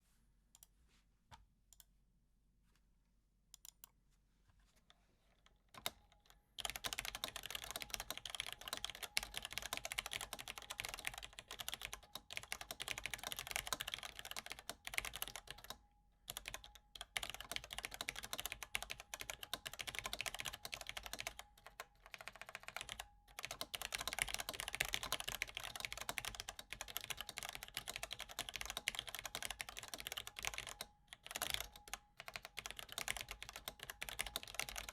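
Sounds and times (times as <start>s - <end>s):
keyboard typing: 5.7s - 34.9s.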